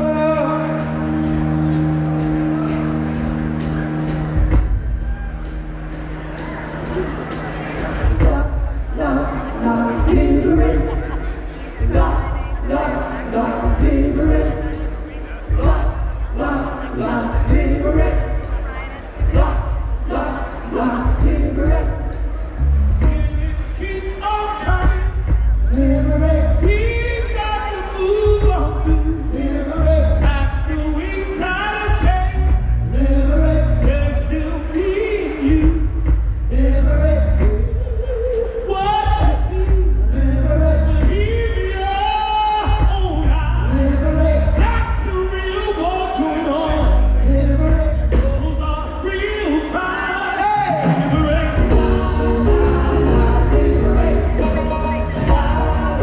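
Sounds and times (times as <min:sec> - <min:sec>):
amplified band with pulsing bass: 0:00.0 - 0:56.0
choir singing: 0:05.4 - 0:23.4, 0:49.8 - 0:56.0.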